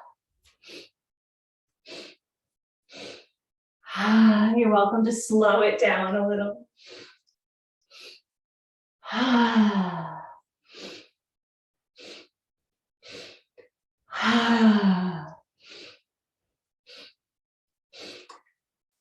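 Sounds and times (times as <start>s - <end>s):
sharp inhales: 15.6s - 16.1s.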